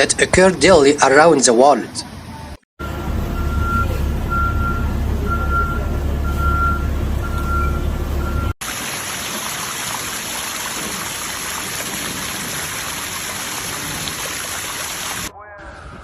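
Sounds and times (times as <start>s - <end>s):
truck engine rumble: 2.3s - 8.6s
truck reversing beeper: 2.8s - 8.6s
water rushing: 8.6s - 15.3s.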